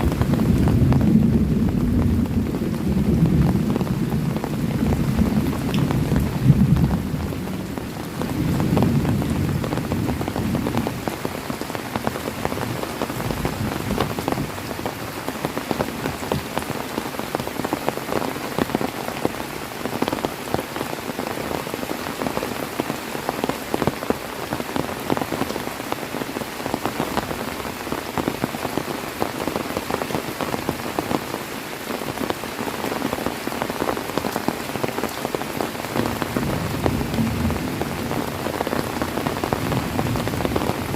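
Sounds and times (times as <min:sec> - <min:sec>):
thunder rumble: 0:00.0 - 0:11.1, 0:36.0 - 0:40.9
heavy rain falling: 0:00.0 - 0:40.9.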